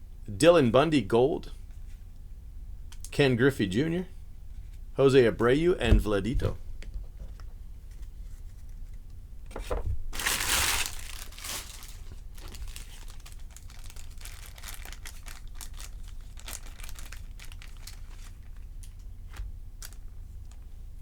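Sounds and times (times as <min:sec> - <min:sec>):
low steady hum: 0:00.0 - 0:21.0
wrapper crinkling: 0:10.1 - 0:19.0
wrapper tearing open: 0:10.2 - 0:19.0.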